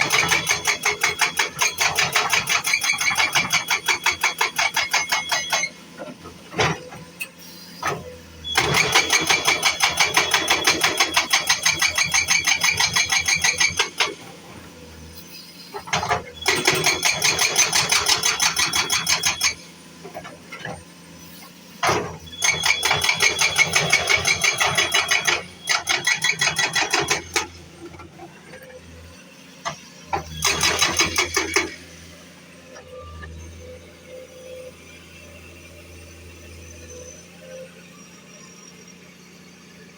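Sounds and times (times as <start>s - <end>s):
road-repair machine hammering: 0.0s - 7.0s, 7.8s - 14.4s, 15.8s - 20.8s, 21.8s - 28.1s, 29.6s - 31.8s.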